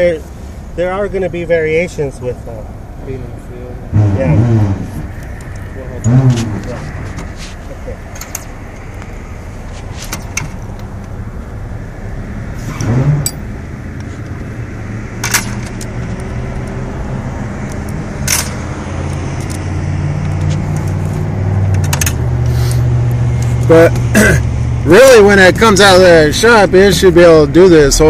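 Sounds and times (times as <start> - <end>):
sharp metallic clinks: 8.1 - 8.9, 12.7 - 13.6, 18.2 - 18.7.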